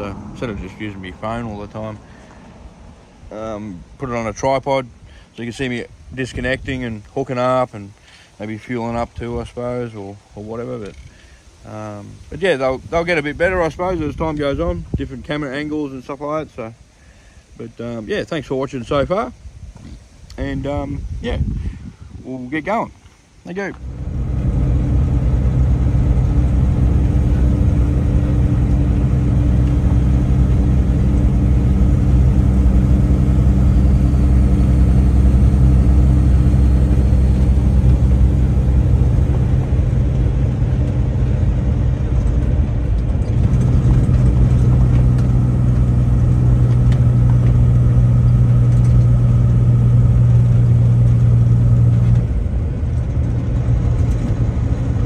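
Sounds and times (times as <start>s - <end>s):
truck engine running: 23.7s - 55.0s.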